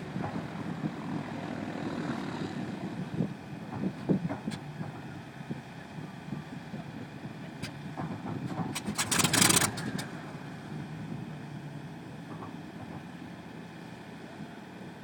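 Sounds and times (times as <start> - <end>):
engine rumble: 0.0 - 15.0
piston engine starting pops: 8.1 - 10.1.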